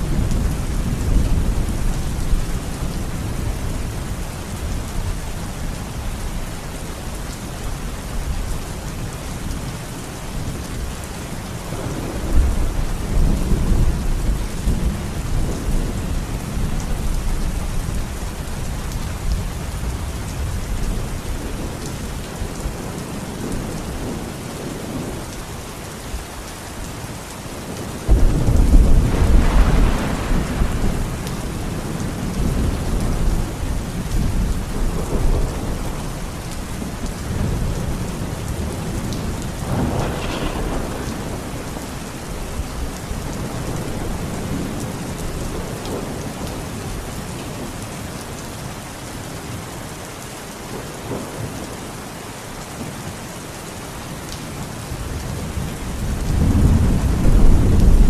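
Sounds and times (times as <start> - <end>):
steady rain: 0.0 - 58.0
rolling thunder: 11.6 - 18.0, 28.1 - 46.6, 55.2 - 58.0.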